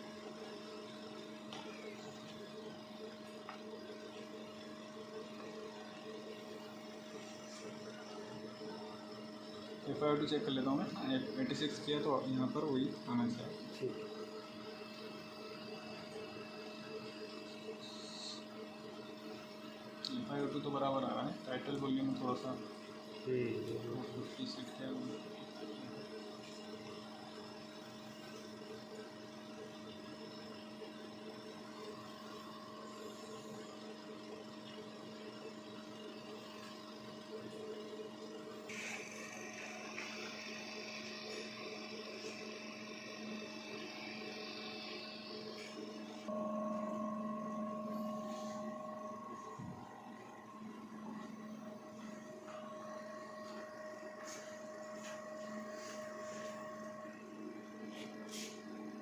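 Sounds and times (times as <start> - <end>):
ventilator hum and whir: 0.0 - 59.0
hiss with high tone: 38.7 - 40.1.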